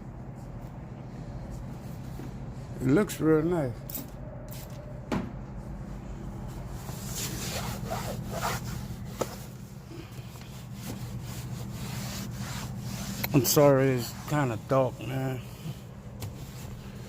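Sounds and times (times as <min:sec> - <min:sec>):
steady low hum: 0:00.0 - 0:17.0
applicator pad rubbing a surface: 0:06.8 - 0:09.7, 0:10.4 - 0:15.0.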